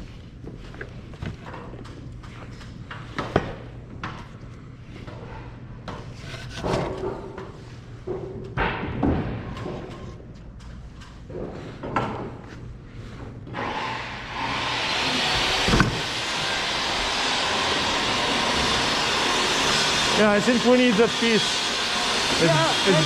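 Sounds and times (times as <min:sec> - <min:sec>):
machine hissing and humming: 0:13.6 - 0:23.0.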